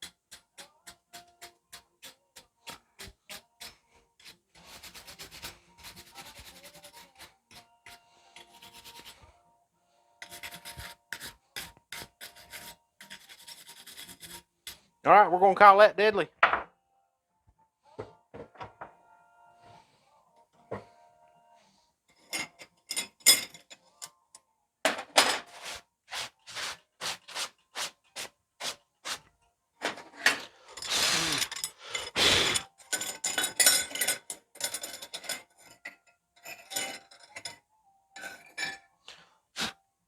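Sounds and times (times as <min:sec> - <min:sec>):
scraping steel knife blades: 0:10.2 - 0:14.8.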